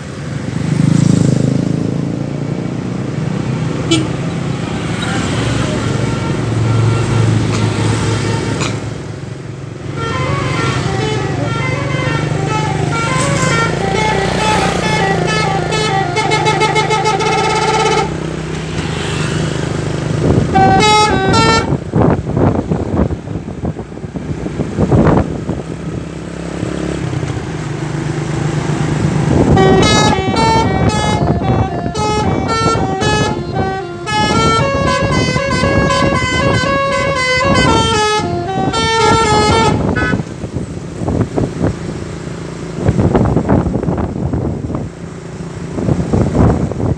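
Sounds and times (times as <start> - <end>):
bus engine: 0.0 - 46.9
traffic noise: 0.0 - 46.9
multi-tone bus horn melody: 3.7 - 23.8, 29.0 - 41.2.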